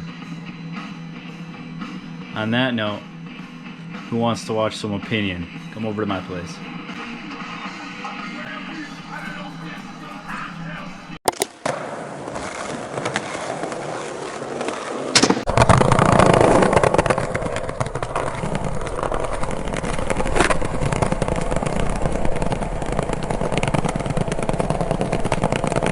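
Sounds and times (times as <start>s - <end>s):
skateboard wheels rolling on pavement: 7.0s - 25.9s.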